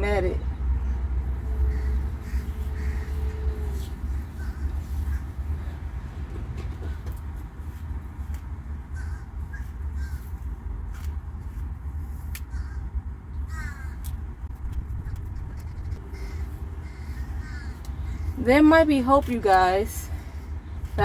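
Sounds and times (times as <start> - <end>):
low rumble: 0.0 - 8.1, 8.7 - 18.4
crow-like caws: 1.6 - 5.4, 9.0 - 10.3, 12.5 - 12.9, 13.5 - 14.1, 15.9 - 18.4.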